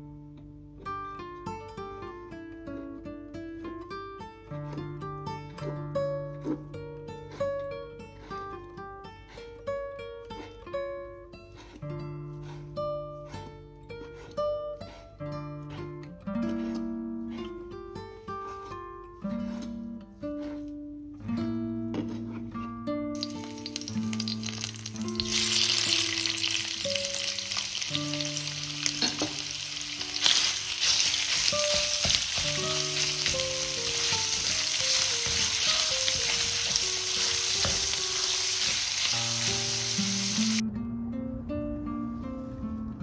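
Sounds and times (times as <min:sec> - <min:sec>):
acoustic guitar music: 0:00.0 - 0:43.0
food sizzling in a frying pan: 0:23.2 - 0:40.6.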